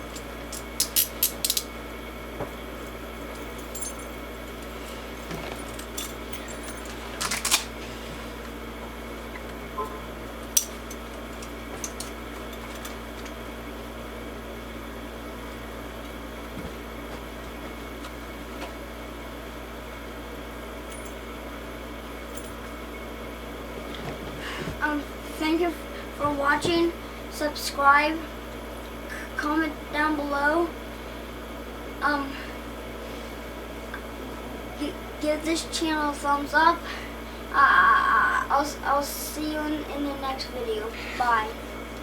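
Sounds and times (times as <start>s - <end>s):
steady background hum: 0.0s - 42.0s
metal handcuffs clicking: 0.5s - 1.7s.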